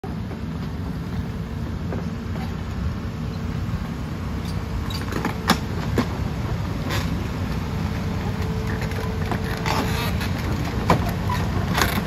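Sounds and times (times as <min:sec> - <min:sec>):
excavator diesel engine rumbling: 0:00.0 - 0:12.0.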